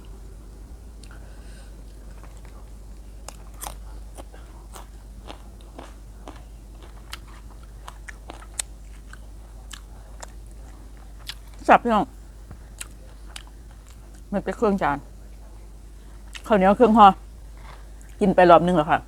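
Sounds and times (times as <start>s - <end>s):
person chewing crunchy vegetables: 1.0s - 11.6s, 12.5s - 14.3s.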